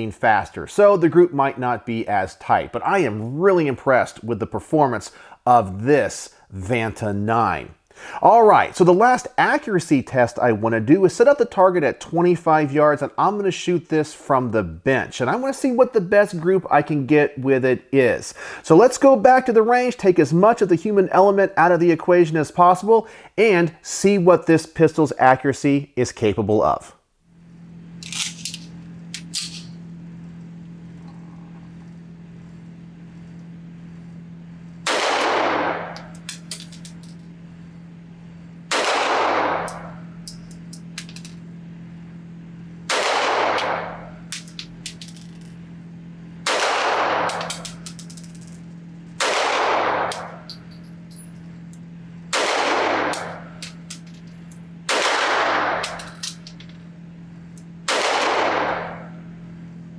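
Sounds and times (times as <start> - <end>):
steady low hum: 0.0 - 59.9
pistol shots: 34.9 - 36.0, 38.7 - 39.9, 42.9 - 44.0, 46.5 - 47.9, 49.2 - 50.4, 52.3 - 53.5, 54.9 - 56.0, 57.9 - 59.1
light metallic clinks: 50.4 - 51.4.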